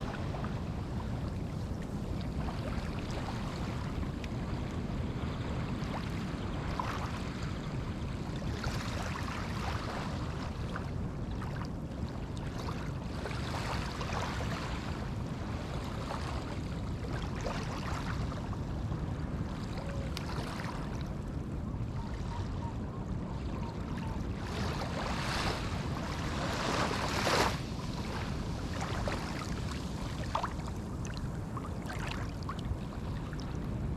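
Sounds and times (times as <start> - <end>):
low rumble of surf: 0.0 - 33.9.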